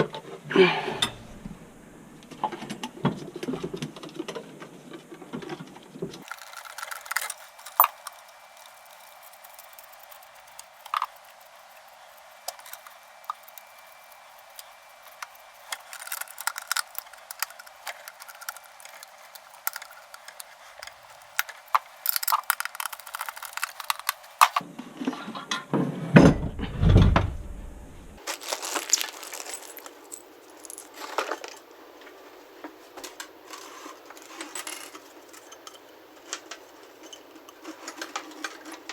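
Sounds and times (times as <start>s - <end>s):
metal tools clinking: 6.2s - 24.6s, 28.2s - 31.6s
deep clattering rattle: 26.2s - 28.2s.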